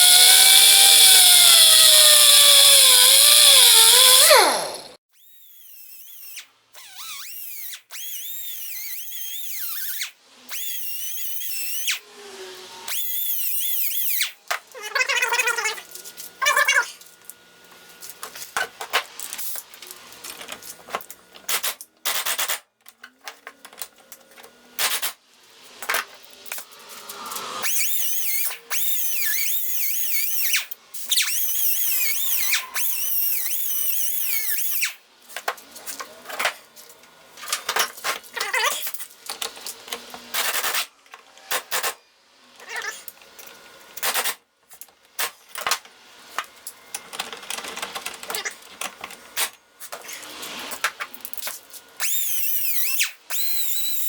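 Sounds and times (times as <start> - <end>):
whirring with wavering pitch: 0.0 - 5.0.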